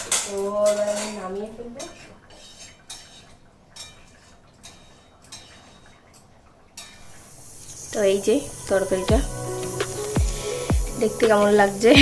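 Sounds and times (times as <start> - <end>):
metal spoon clinking on pot: 0.0 - 7.1.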